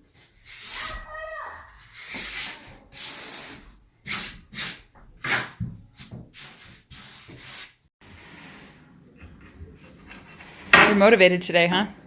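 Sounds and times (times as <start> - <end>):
trowel scraping wet mortar: 1.7 - 7.8.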